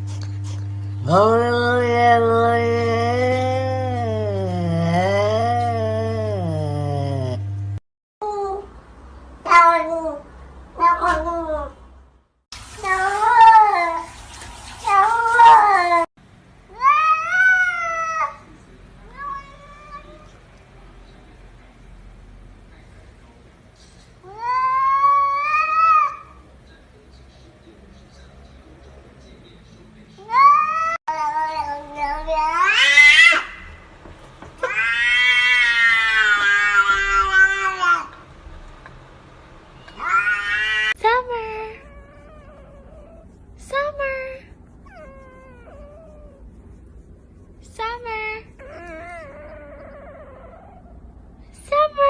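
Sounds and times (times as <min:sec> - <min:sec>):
cat yowling: 0:09.4 - 0:10.2, 0:16.7 - 0:18.4, 0:19.0 - 0:20.3, 0:24.3 - 0:26.4, 0:30.2 - 0:33.8, 0:34.6 - 0:38.2, 0:39.9 - 0:41.0
cat meowing: 0:34.6 - 0:38.2, 0:39.8 - 0:41.0.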